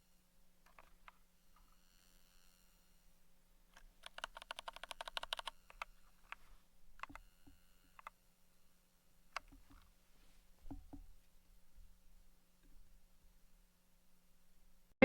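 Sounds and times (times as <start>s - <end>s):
mechanical keyboard typing: 4.0s - 5.9s.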